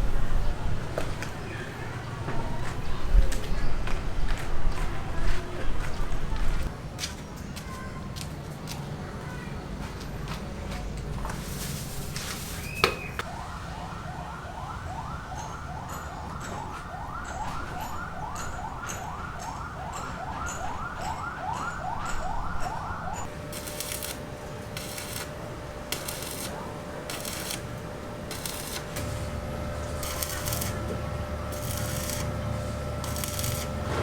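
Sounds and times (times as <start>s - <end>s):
siren sweeping: 13.2s - 24.1s.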